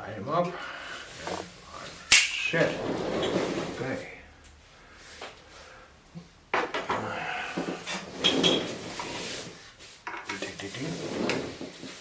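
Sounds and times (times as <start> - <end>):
hard parts clattering on workbench: 6.5 - 9.3.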